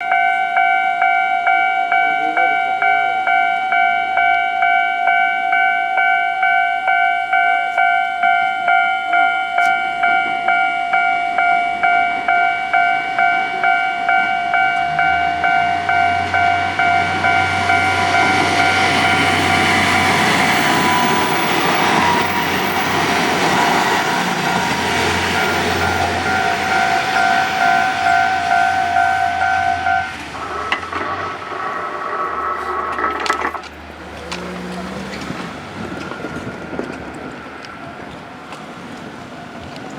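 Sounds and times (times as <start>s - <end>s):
level crossing bell ringing: 0.0s - 33.7s
diesel railcar engine rumble: 0.0s - 39.9s
train wheel noise: 0.0s - 39.9s.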